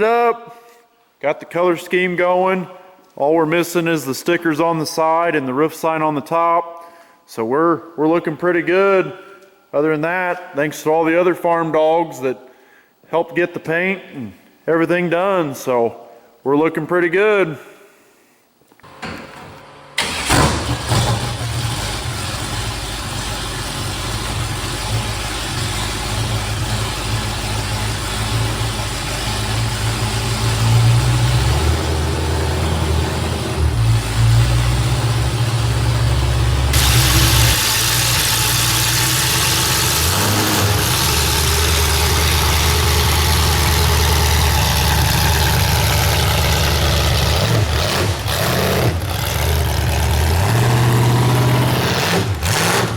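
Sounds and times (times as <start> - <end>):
vehicle engine running: 19.8 - 52.9
steady hiss: 36.6 - 44.6.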